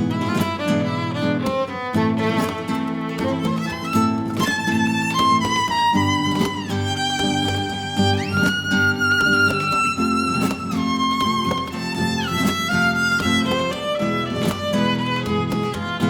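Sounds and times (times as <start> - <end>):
plucked guitar: 0.0 - 16.0
violin melody with slides: 0.1 - 16.0.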